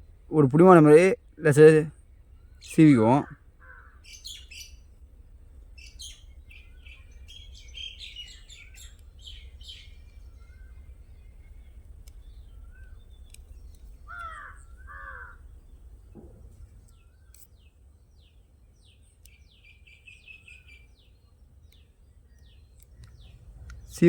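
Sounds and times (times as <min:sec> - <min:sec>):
small birds chirping: 0:00.0 - 0:24.0
steady low hum: 0:00.0 - 0:24.0
crow cawing: 0:03.2 - 0:04.5, 0:14.0 - 0:15.5.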